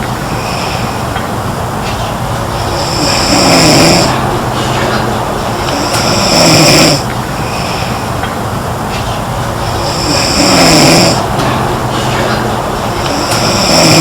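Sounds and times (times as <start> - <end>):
girl snoring: 9.8 - 11.2.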